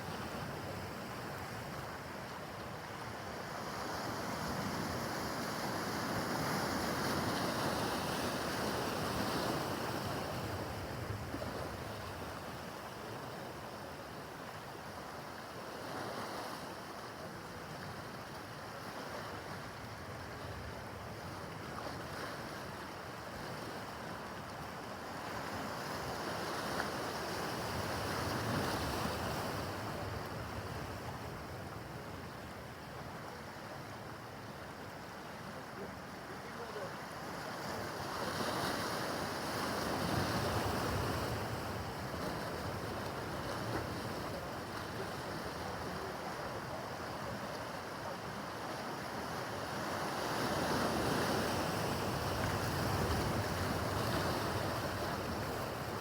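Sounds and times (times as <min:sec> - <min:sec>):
waves washing and breaking: 0:36.4 - 0:56.0.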